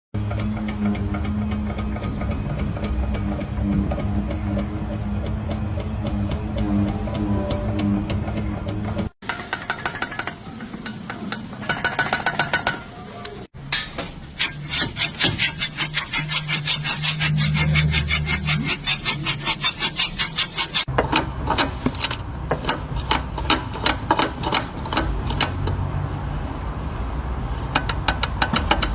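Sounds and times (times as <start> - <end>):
car suspension squeaking: 14.3 - 26.0.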